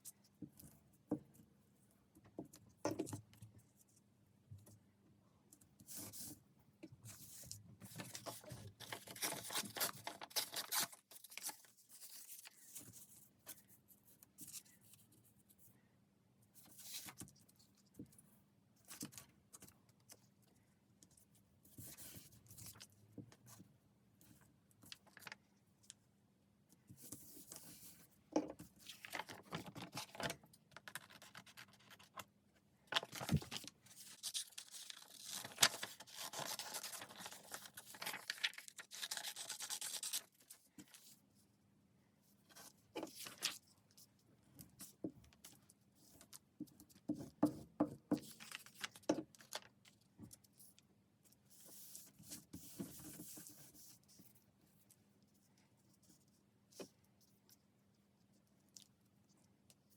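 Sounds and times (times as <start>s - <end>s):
paper rustling and crinkling: 7.1s - 13.6s, 28.7s - 32.3s, 32.9s - 41.2s, 42.5s - 43.7s, 48.1s - 50.8s.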